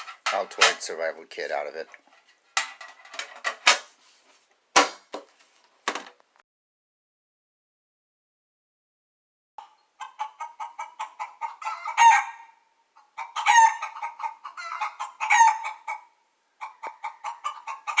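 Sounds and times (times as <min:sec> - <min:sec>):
hen clucking: 0:09.6 - 0:18.0.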